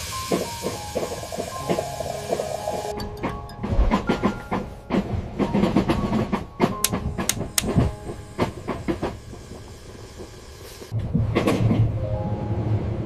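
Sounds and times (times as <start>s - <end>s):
train rumbling on rails: 0.0s - 13.0s
clattering clicks and knocks: 2.9s - 9.2s.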